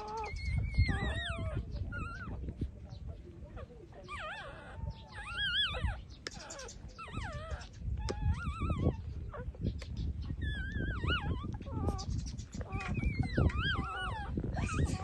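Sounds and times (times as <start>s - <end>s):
low shuffling noise: 0.0s - 4.0s
puppies whimpering: 0.0s - 15.0s.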